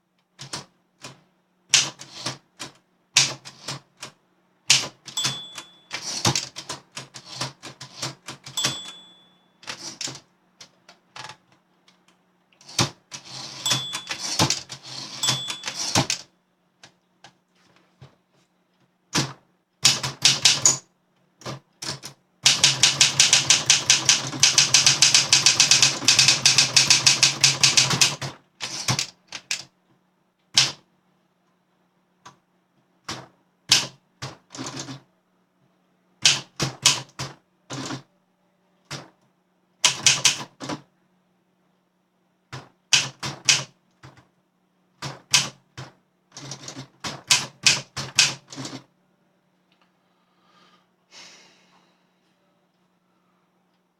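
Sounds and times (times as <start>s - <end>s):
typewriter key strikes: 4.7s - 6.8s, 15.2s - 16.2s, 21.8s - 29.6s, 42.9s - 43.7s.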